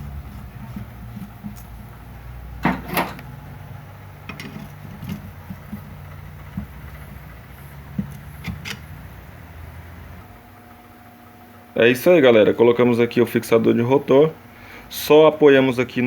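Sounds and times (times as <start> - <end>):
steady low hum: 0.0 - 16.0
metal clanks and knocks: 2.6 - 3.3, 4.2 - 9.0.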